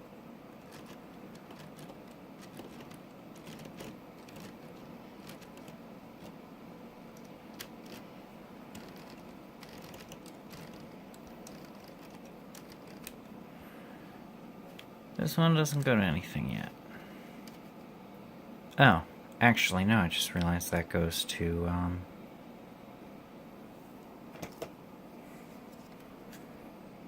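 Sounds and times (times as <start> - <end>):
plastic gears clicking by hand: 0.7 - 6.4, 8.8 - 13.2.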